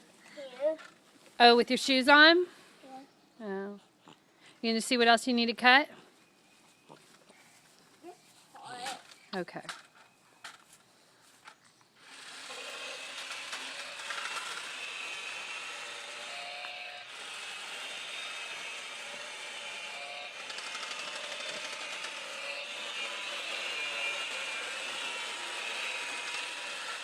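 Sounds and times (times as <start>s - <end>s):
chainsaw cutting wood: 12.0s - 27.0s.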